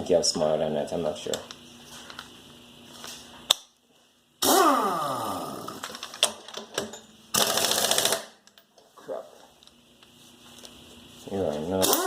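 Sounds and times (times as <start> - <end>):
impact wrench burst: 4.4 - 5.9, 7.3 - 8.4, 11.8 - 12.0
rapid hammering of impact wrench: 7.3 - 8.4.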